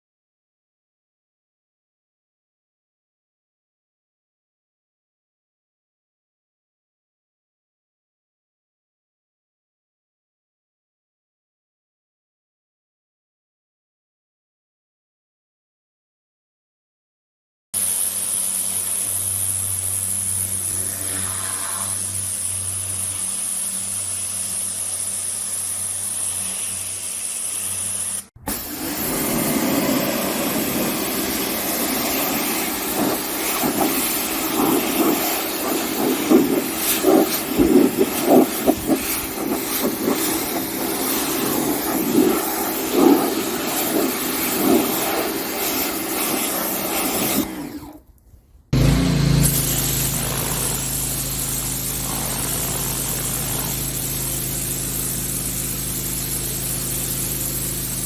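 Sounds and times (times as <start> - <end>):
high-pressure water spray: 17.8 - 48.0, 48.8 - 58.0
pressure washer motor hum: 17.8 - 58.0.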